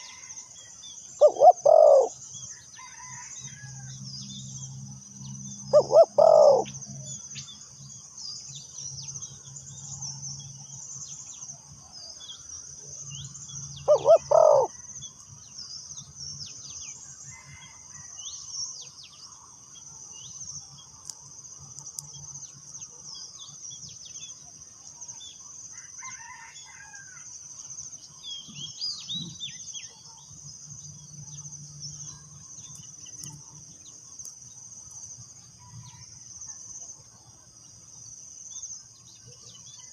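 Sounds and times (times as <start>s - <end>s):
high insect drone: 0.0s - 39.9s
dove cooing: 1.2s - 2.2s, 5.7s - 6.7s, 13.8s - 14.8s.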